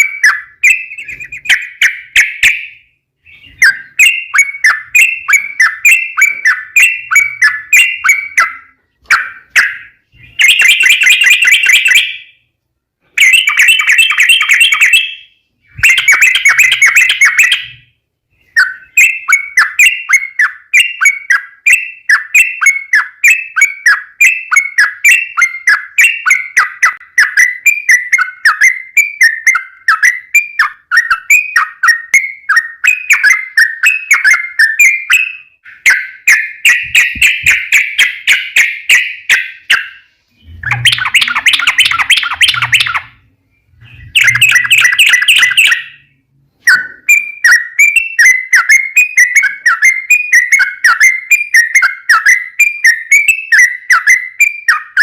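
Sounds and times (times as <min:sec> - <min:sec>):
bulbul singing chirping notes: 0:13.2 - 0:55.0.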